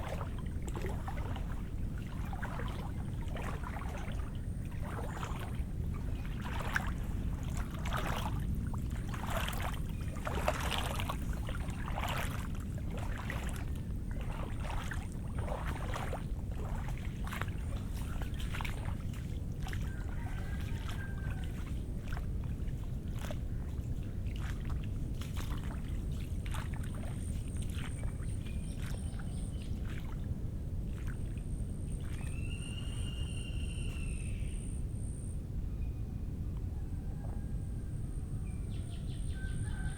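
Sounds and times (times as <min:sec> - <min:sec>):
footsteps on wet muddy ground: 0:00.0 - 0:34.2
steady low rumble: 0:00.0 - 0:39.6.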